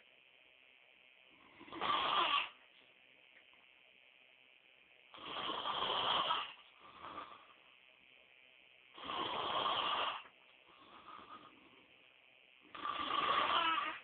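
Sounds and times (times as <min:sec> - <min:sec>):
man snoring loudly: 0:01.5 - 0:02.5, 0:05.1 - 0:07.5, 0:08.9 - 0:10.2, 0:12.7 - 0:14.0.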